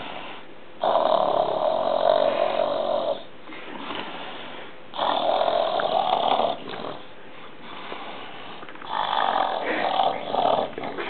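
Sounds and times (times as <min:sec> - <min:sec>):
quiet breathing: 0:00.0 - 0:00.8, 0:01.9 - 0:05.0, 0:05.6 - 0:11.0
man snoring loudly: 0:08.9 - 0:11.0.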